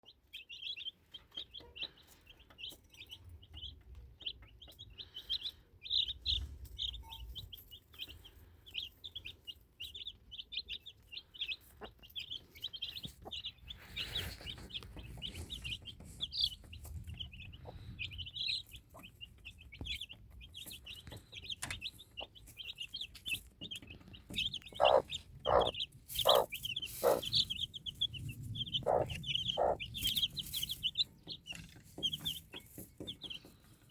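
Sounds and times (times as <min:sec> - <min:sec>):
chicks peeping: 0:00.0 - 0:33.9
hen clucking: 0:08.2 - 0:33.5.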